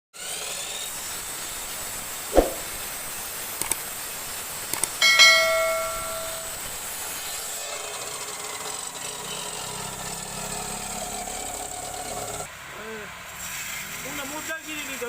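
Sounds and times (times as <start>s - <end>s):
dull thud: 2.3s - 2.8s
light clicks: 3.6s - 3.8s
metal object ringing: 5.0s - 6.7s.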